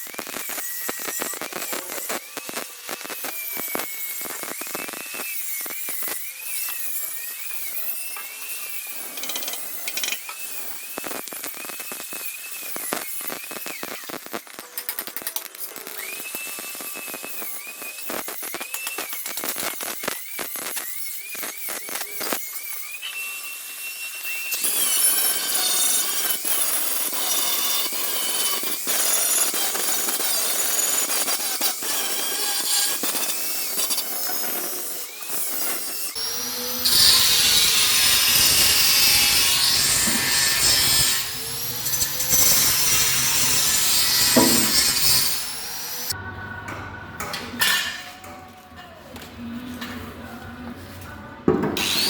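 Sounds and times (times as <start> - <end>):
power tool on steel panel: 0.0 - 46.2, 51.7 - 52.0.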